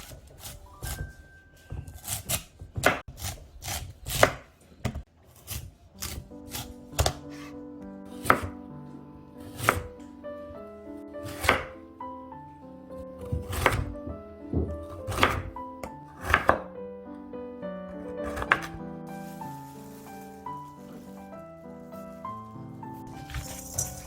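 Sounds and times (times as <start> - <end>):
knife chopping on cutting board: 0.0 - 7.5, 8.2 - 8.6, 9.4 - 9.9, 11.2 - 11.7, 13.2 - 15.6, 16.2 - 16.7, 18.2 - 18.8
background music: 6.0 - 24.0.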